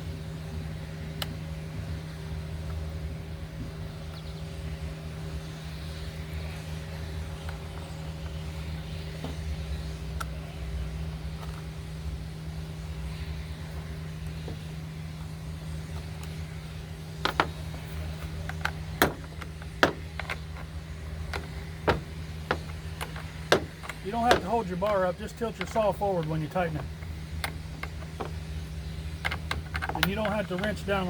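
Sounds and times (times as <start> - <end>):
low hum: 0.0 - 31.0
clicks and knocks of tools: 17.2 - 31.0.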